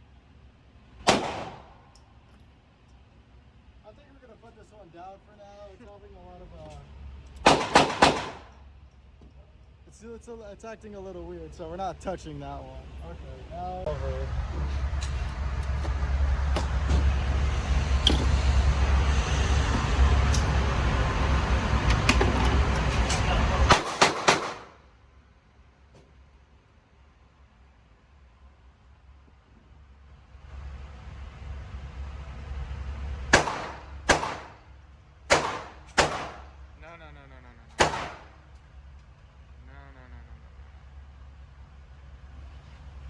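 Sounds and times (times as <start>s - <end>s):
steady low hum: 0.0s - 43.0s
gunshots with echo: 1.1s - 1.8s, 7.4s - 8.5s, 23.7s - 24.8s, 33.3s - 34.6s, 35.3s - 36.5s, 37.8s - 38.4s
low rumble: 12.7s - 23.8s.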